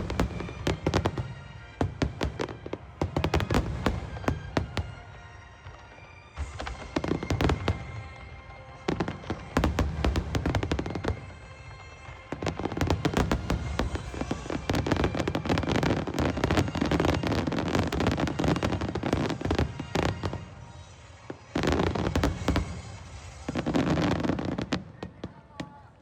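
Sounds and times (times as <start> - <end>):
fireworks booms and crackles: 0.0 - 26.0.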